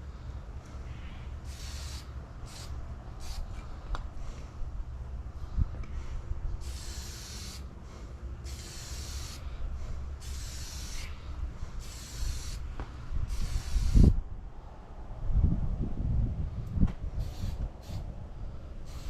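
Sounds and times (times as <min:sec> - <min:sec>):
spray hissing: 0:01.4 - 0:03.5, 0:06.6 - 0:07.7, 0:08.4 - 0:09.4, 0:10.2 - 0:11.2, 0:11.8 - 0:12.6, 0:13.3 - 0:14.2, 0:17.2 - 0:18.0.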